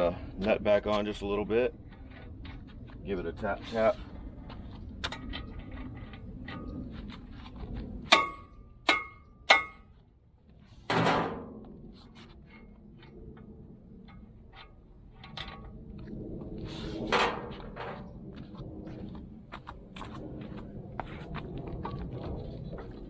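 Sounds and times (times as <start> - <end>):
hammer striking steel: 8.1 - 9.9.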